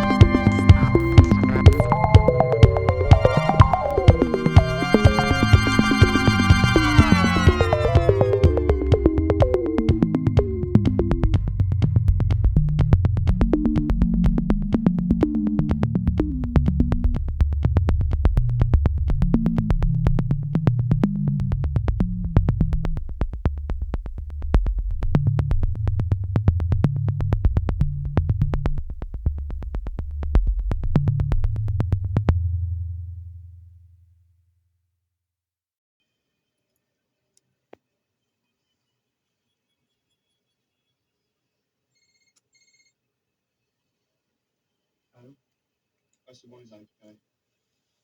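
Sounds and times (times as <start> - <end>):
electronic synthesizer music: 0.0 - 12.1.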